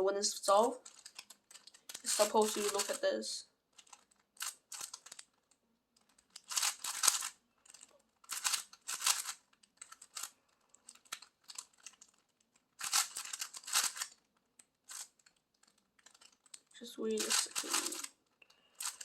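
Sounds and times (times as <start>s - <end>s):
plastic puzzle cube clicking: 0.8s - 3.0s, 3.8s - 18.2s, 18.8s - 19.0s.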